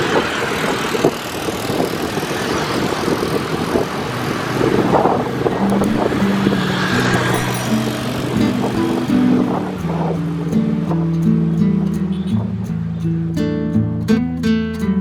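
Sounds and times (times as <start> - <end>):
wind on microphone: 0.0 - 13.0
vehicle engine and road noise: 0.0 - 14.4
music with held notes: 5.5 - 15.0.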